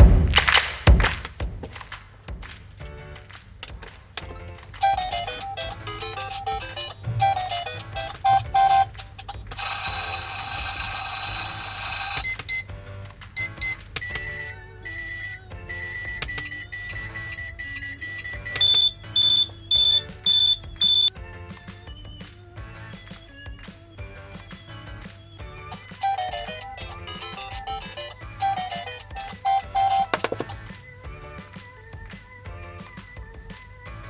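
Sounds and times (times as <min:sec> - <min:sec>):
video game tunes from toy speaker: 0:04.2 - 0:12.8, 0:13.4 - 0:21.1, 0:25.7 - 0:31.0
loud steady tone: 0:04.8 - 0:12.7, 0:13.4 - 0:21.1, 0:25.8 - 0:30.6
short beeps: 0:04.8 - 0:12.7, 0:13.4 - 0:21.1, 0:25.8 - 0:30.6.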